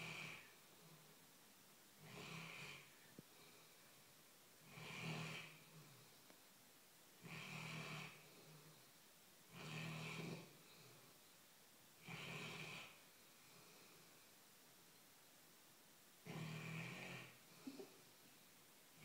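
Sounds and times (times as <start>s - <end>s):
dog snoring: 0.0s - 0.6s, 2.0s - 2.9s, 4.6s - 6.1s, 7.2s - 8.8s, 9.5s - 11.1s, 12.0s - 14.0s, 16.2s - 17.9s.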